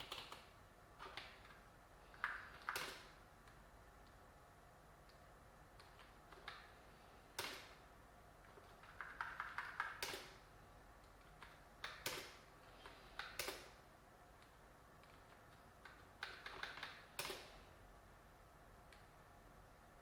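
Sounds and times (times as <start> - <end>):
computer hardware clicks and knocks: 0.0 - 3.6, 5.7 - 7.8, 8.4 - 10.4, 11.0 - 13.8, 15.0 - 17.6.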